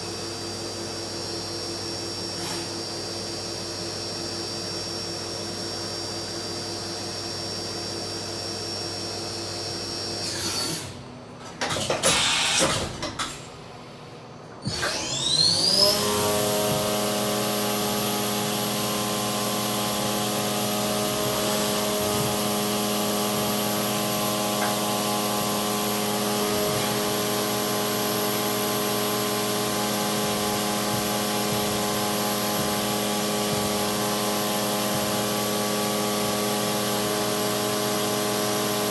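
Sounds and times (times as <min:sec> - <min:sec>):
machining center whine: 0:13.6 - 0:38.0.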